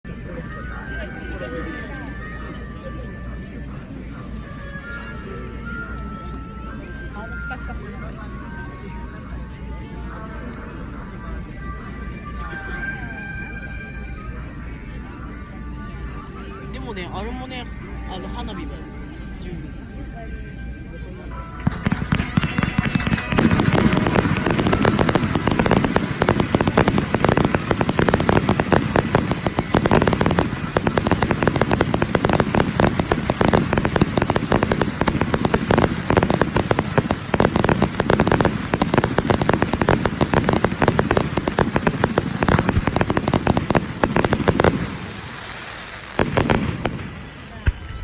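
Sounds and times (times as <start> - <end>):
fireworks banging and crackling: 21.6 - 48.0.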